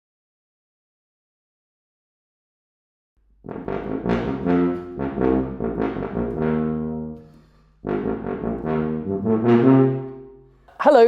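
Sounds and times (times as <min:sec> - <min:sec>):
solo tuba playing: 0:03.3 - 0:10.6.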